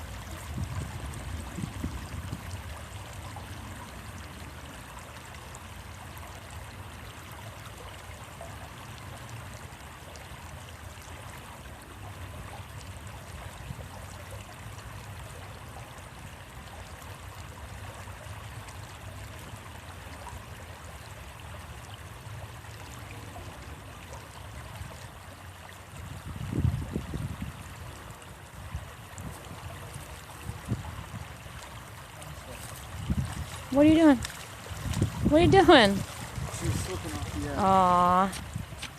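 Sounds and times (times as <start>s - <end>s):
stream water flowing: 0.0s - 38.9s.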